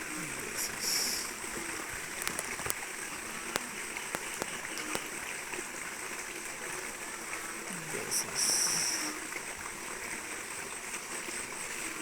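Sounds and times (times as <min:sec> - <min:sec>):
waterfall rushing: 0:00.0 - 0:05.2.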